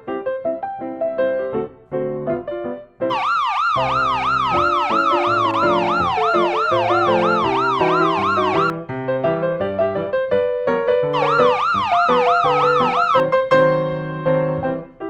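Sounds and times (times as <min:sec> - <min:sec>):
piano music: 0:00.0 - 0:15.0
police siren yelping: 0:03.1 - 0:08.7, 0:11.2 - 0:13.2.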